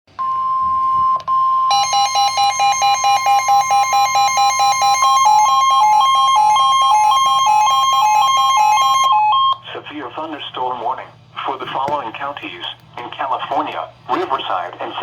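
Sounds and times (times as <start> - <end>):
rapid beeping alarm: 0.2 - 9.6.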